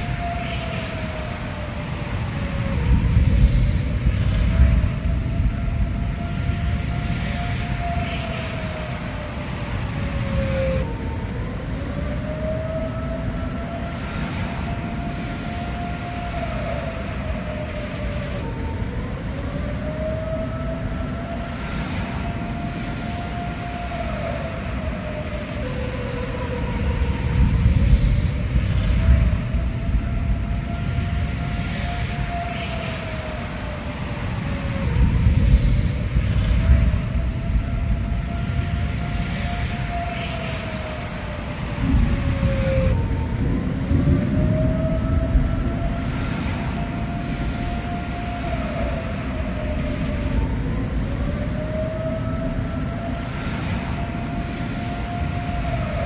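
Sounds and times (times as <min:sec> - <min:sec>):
tornado warning siren wailing: 0:00.0 - 0:56.0.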